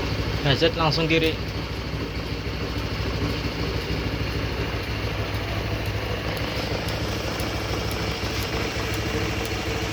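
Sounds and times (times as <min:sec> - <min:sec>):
scooter engine idling: 0:00.0 - 0:09.9
hazard flasher ticking: 0:00.5 - 0:09.9.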